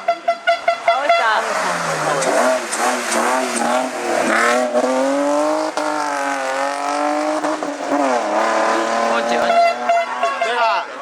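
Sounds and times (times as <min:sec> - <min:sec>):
race car engine accelerating: 0:01.4 - 0:09.9.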